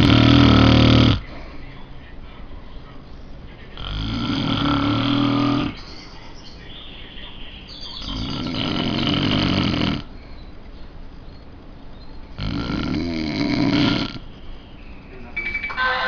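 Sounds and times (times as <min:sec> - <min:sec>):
man snoring: 0:00.0 - 0:01.3, 0:03.8 - 0:05.8, 0:08.0 - 0:10.1, 0:12.4 - 0:14.2
quiet breathing: 0:00.0 - 0:07.3, 0:07.9 - 0:11.2.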